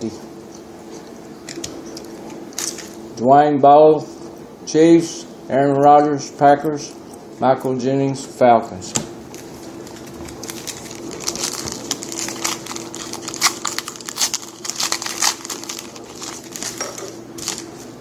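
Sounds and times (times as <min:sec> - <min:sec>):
wrapper tearing and crinkling: 0:09.4 - 0:17.8.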